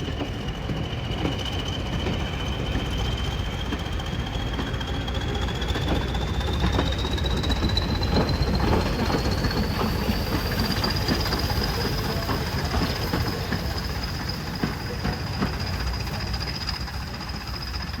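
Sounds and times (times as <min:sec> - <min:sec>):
diesel locomotive engine rumbling: 0:00.0 - 0:18.0.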